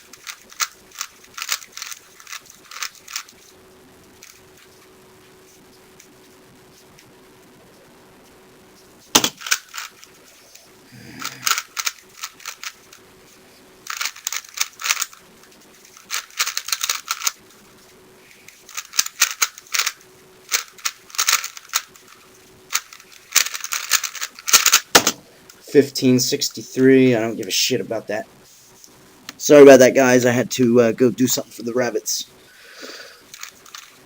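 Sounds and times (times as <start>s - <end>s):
puzzle cube plastic clicking: 0.1s - 3.4s, 9.2s - 10.1s, 11.2s - 13.0s, 13.9s - 15.2s, 15.9s - 17.4s, 18.6s - 25.2s, 33.3s - 34.0s.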